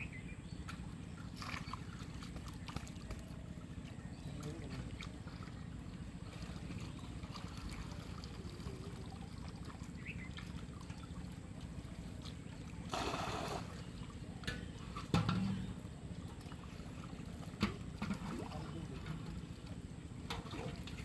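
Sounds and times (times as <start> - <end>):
pond water trickling: 0.0 - 21.0
water splash: 12.9 - 13.9.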